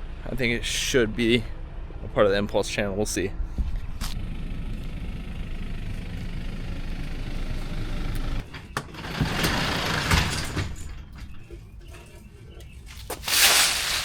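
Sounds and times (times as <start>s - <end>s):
garage door rumbling open: 8.2s - 11.5s
rattling noise: 8.2s - 11.6s.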